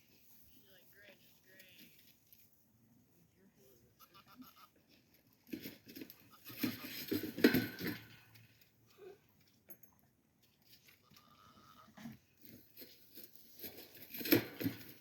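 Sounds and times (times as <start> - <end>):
goats scuffling with clattering knocks: 4.1 - 15.0.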